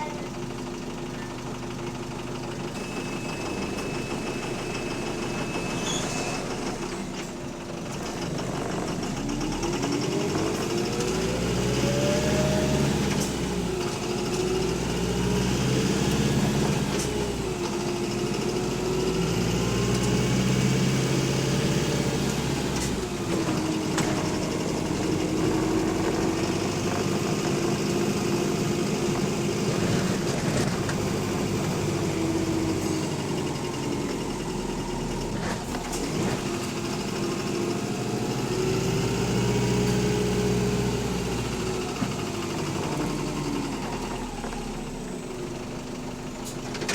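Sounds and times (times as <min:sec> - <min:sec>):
bus engine with rod knock: 0:05.2 - 0:46.9.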